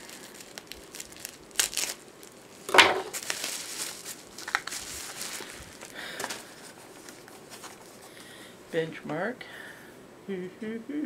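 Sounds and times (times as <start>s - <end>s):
packaging crunch: 0.0s - 7.8s
packaging crinkling and rustling: 0.0s - 8.2s.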